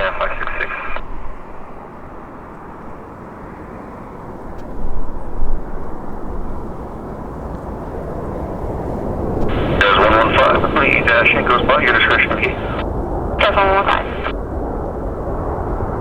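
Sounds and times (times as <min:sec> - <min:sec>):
jet engines rumbling: 0:00.0 - 0:16.0.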